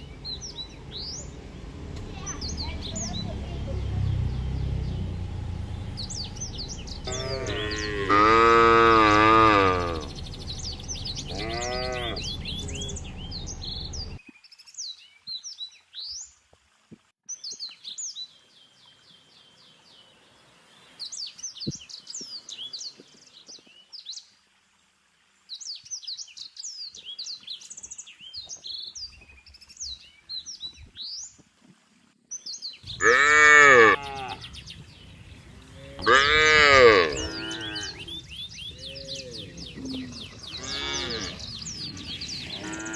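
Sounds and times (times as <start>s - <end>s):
small birds chirping: 0.0s - 16.4s, 17.0s - 24.4s, 25.4s - 42.9s
cattle mooing: 7.0s - 10.2s, 11.2s - 13.0s, 33.0s - 34.4s, 35.7s - 42.9s.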